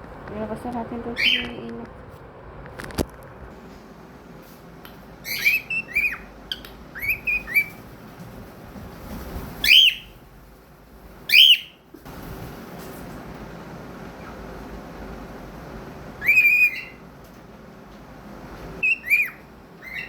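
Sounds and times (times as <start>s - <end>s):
cockatiel whistling: 5.2s - 7.8s, 9.6s - 10.2s, 11.3s - 11.8s, 16.2s - 17.0s, 18.8s - 20.0s.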